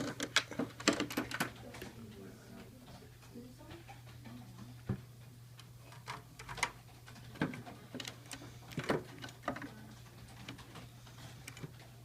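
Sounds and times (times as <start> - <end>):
computer hardware clicks and knocks: 0.0 - 1.9, 5.6 - 11.9.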